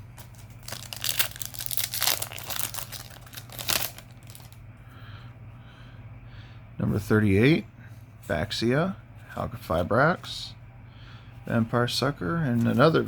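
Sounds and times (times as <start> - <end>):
foil wrapper crinkling: 0.0 - 4.6
low steady hum: 0.0 - 13.0.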